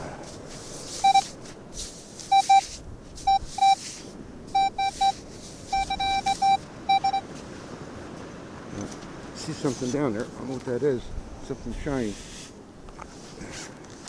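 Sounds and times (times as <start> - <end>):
metal detector beeps: 1.0 - 1.3, 2.3 - 2.7, 3.3 - 3.9, 4.5 - 7.2.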